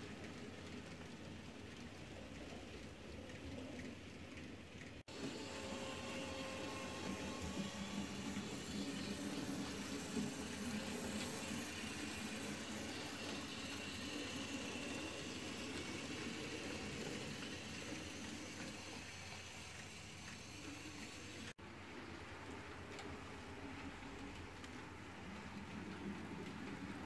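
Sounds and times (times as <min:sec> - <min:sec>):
model train whirring and rattling: 0:00.0 - 0:21.6.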